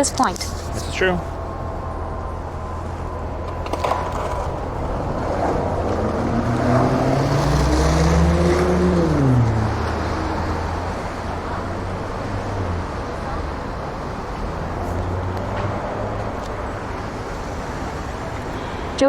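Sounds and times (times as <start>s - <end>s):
bus engine revving: 0.0s - 19.0s.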